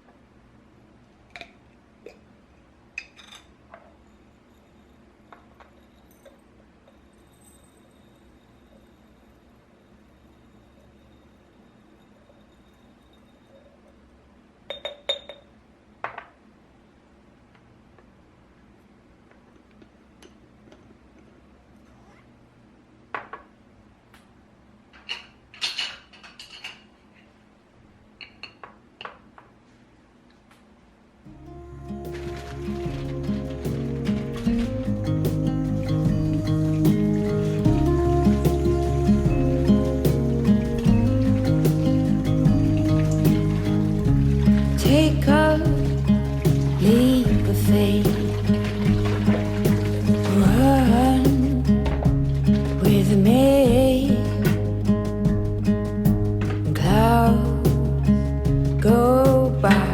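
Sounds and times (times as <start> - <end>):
kitchenware clinking: 3.0 - 4.0, 14.7 - 15.5, 25.0 - 27.0, 28.2 - 29.2.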